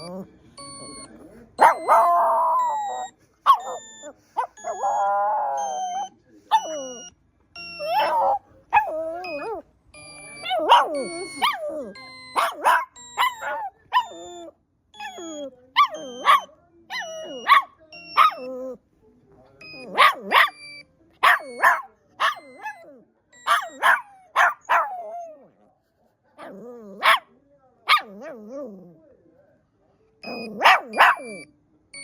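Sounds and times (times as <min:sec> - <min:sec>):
dog barking and grumbling: 0:01.6 - 0:05.8, 0:07.8 - 0:09.6, 0:10.4 - 0:14.4, 0:19.7 - 0:20.6, 0:21.2 - 0:25.6, 0:26.4 - 0:27.3, 0:27.9 - 0:29.0, 0:30.2 - 0:31.4.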